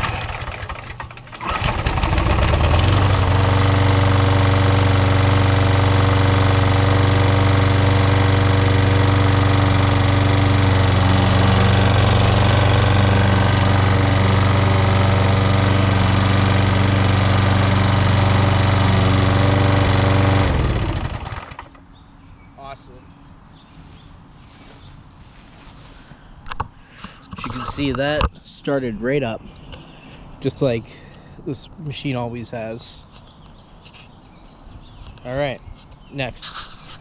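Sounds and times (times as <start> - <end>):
lawn mower engine starting and running: 0.0 - 21.9.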